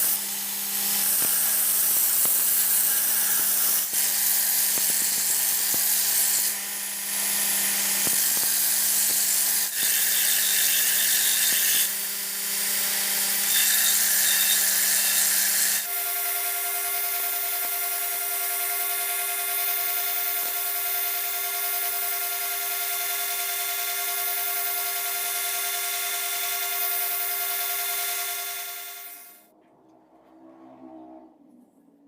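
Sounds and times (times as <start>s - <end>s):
grinder on steel: 0.0s - 16.1s, 23.1s - 31.0s.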